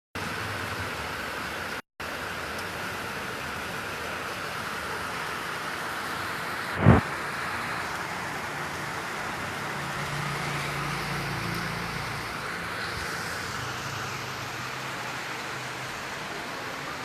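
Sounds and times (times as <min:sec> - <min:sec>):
heavy rain hissing: 0:02.2 - 0:17.0
low engine hum: 0:06.8 - 0:15.0.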